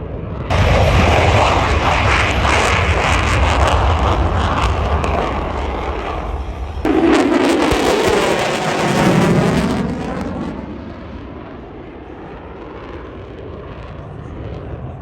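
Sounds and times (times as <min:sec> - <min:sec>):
jet aircraft passing: 0:00.0 - 0:15.0.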